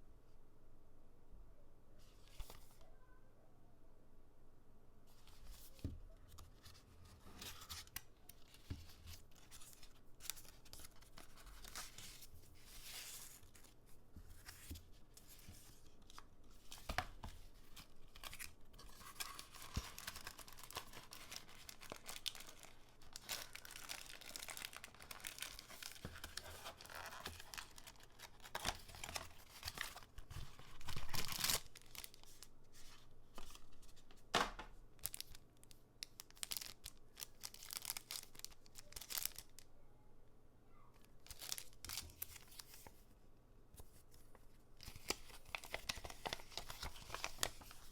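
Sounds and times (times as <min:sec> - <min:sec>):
packaging torn and crinkled: 0:17.8 - 0:32.5, 0:35.0 - 0:35.4, 0:36.0 - 0:39.6, 0:41.2 - 0:42.7, 0:44.8 - 0:47.9.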